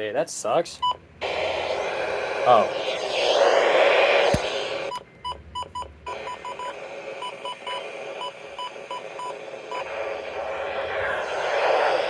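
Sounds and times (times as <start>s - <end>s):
radio static hiss: 1.2s - 5.0s, 6.1s - 12.0s
sharp click: 4.3s - 4.6s.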